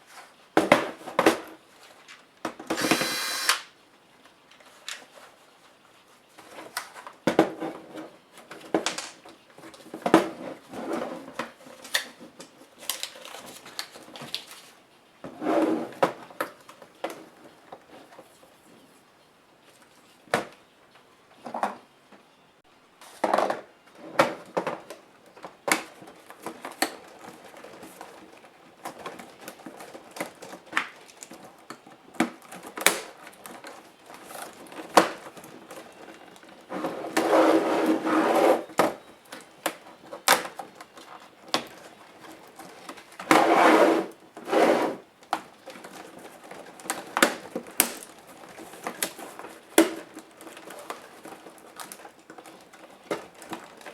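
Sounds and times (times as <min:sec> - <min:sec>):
clicks and knocks of plastic parts: 0:45.2 - 0:53.9.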